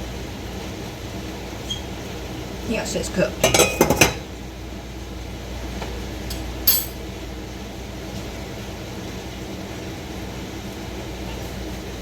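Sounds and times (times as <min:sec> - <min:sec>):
air conditioner humming: 0:00.0 - 0:12.0
utensil clinking on dish: 0:03.4 - 0:04.3, 0:06.3 - 0:07.0.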